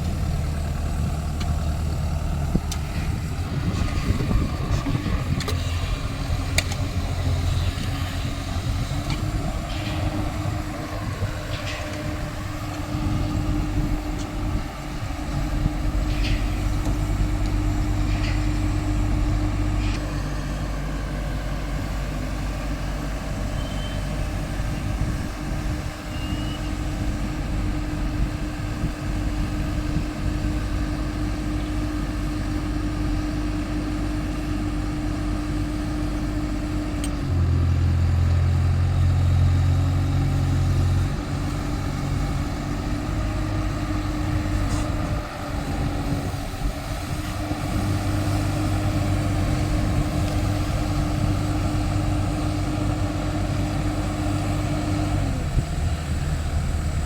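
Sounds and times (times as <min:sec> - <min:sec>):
steady whine: 0:00.0 - 0:33.5
diesel excavator engine running: 0:00.0 - 0:57.0.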